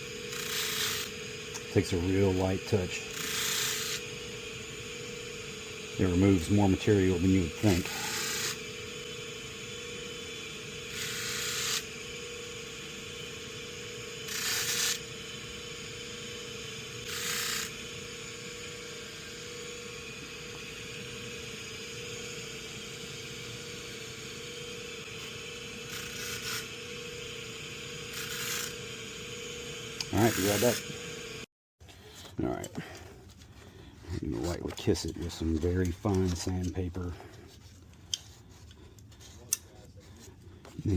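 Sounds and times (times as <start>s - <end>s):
steady low hum: 0.0s - 40.9s
abrasive strokes on steel: 14.2s - 15.2s, 25.8s - 26.8s, 28.1s - 28.9s.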